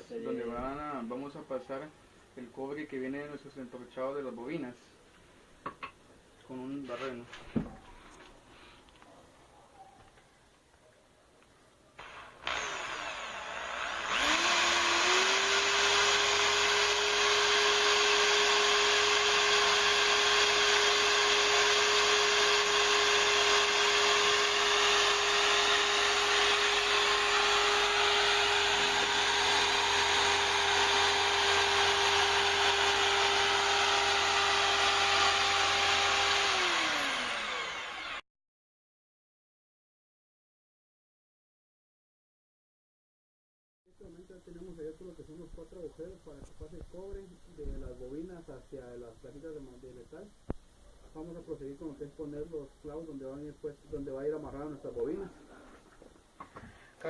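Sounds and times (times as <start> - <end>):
electric drill boring wood: 12.0 - 38.2.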